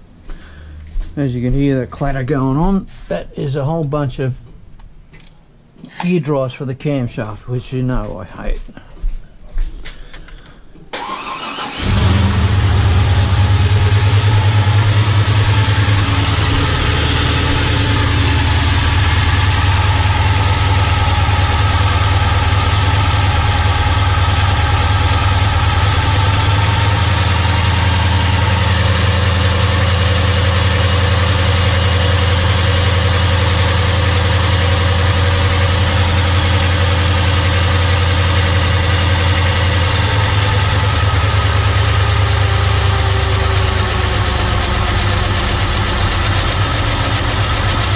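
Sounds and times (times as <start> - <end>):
car engine idling: 11.0 - 47.9.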